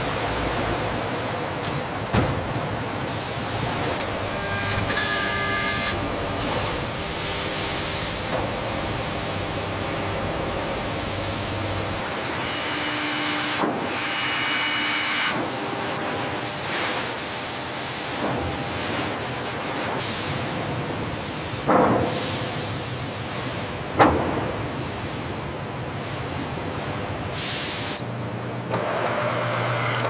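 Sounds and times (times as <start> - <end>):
machine hissing: 3.1 - 12.5.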